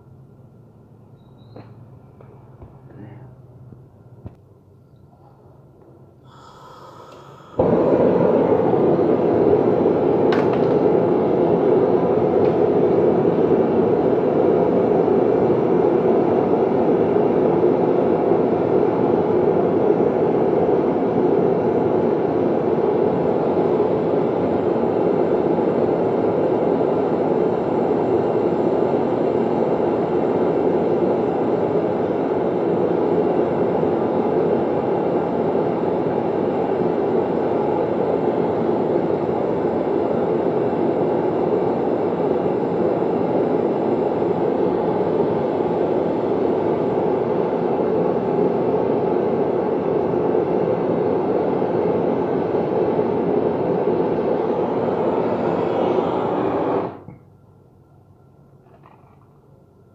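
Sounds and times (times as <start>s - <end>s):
machine rushing noise: 53.2s - 57.0s.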